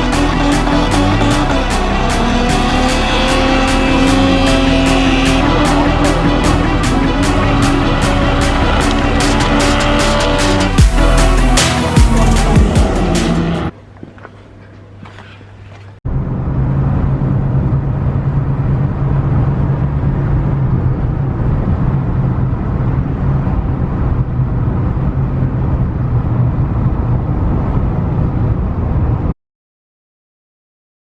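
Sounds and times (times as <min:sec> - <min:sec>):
car engine running: 0:00.0 - 0:13.7.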